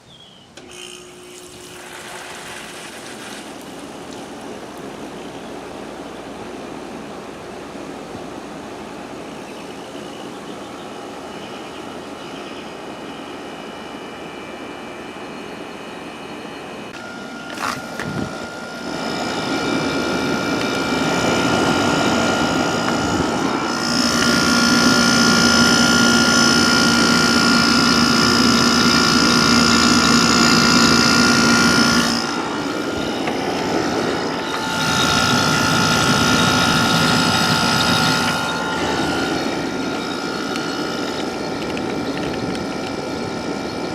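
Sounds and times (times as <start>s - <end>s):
air conditioner whirring: 0.0s - 43.9s.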